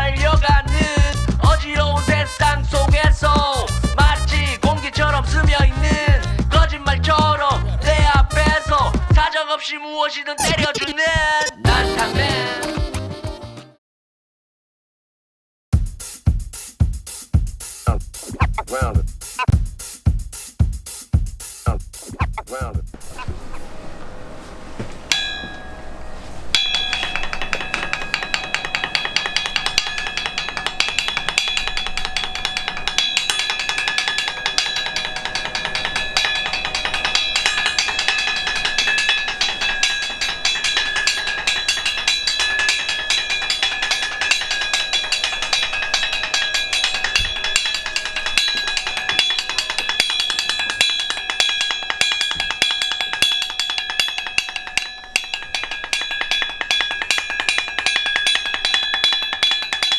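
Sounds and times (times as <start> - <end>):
fast drum and wood-block strikes: 0.0 - 7.4, 8.0 - 9.2, 15.8 - 23.0, 26.7 - 59.9
high ringing tones: 25.1 - 59.9.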